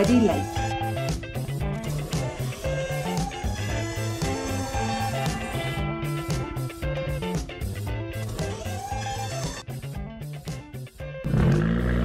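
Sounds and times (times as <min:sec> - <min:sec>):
upbeat music with guitar and beat: 0:00.0 - 0:11.8.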